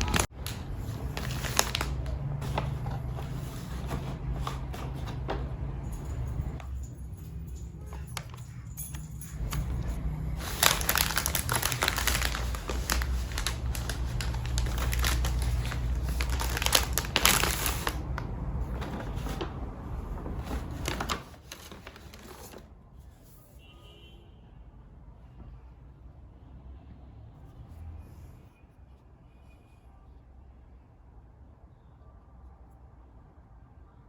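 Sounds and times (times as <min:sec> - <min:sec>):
wrapping crinkling and rustling: 0:00.0 - 0:06.6, 0:07.5 - 0:22.7.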